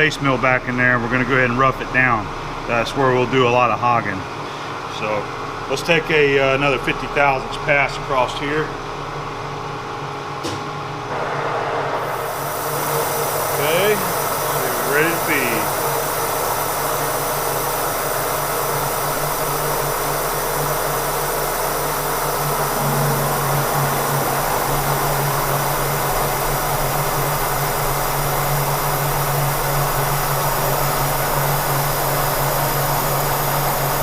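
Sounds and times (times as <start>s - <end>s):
milling machine cutting steel: 12.0s - 34.0s.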